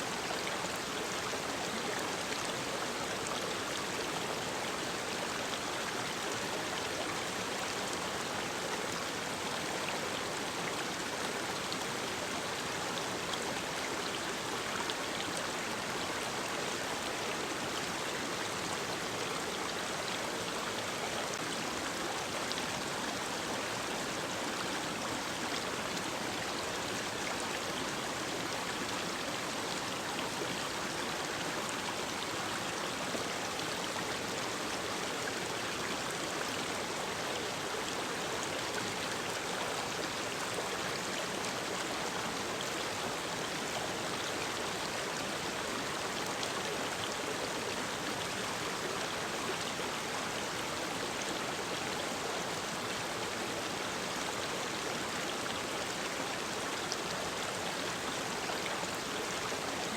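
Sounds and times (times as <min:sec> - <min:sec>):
stream water rushing: 0:00.0 - 0:59.9.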